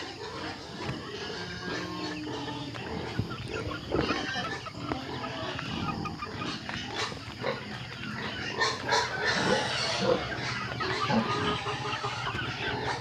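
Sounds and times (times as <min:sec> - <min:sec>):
farm animals calling: 0:00.0 - 0:13.0.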